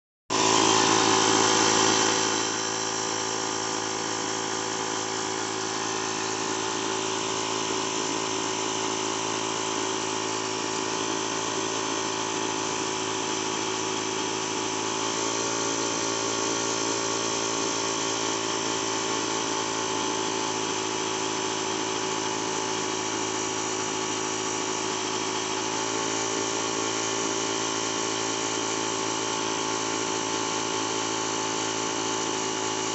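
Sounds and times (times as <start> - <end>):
air compressor whining drone: 0.3 - 32.9.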